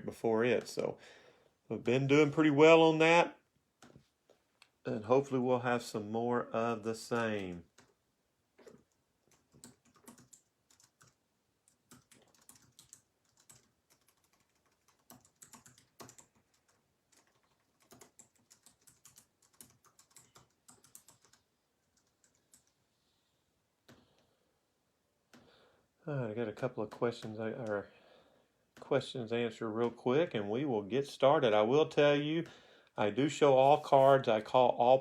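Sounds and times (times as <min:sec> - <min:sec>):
faint keyboard typing: 0:06.7 - 0:08.0, 0:08.6 - 0:22.9, 0:26.6 - 0:27.9.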